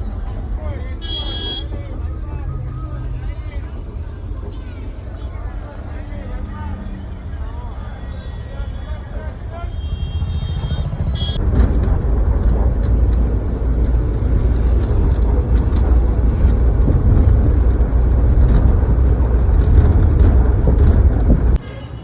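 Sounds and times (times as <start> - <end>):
vehicle engine and road noise: 0.0 - 22.0.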